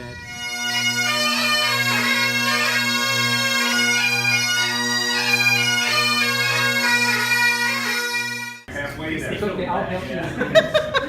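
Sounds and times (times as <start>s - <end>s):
bagpipe drones humming: 0.0s - 8.7s
bagpipe melody: 0.0s - 8.7s.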